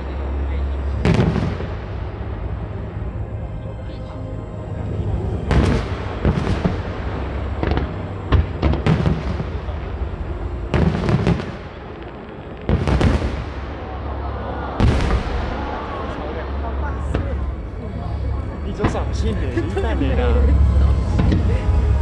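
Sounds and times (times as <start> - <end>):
continuous low rumble: 0.0 - 22.0
firework bangs and cracks: 1.0 - 1.8, 5.5 - 9.9, 10.7 - 14.0, 14.8 - 16.1.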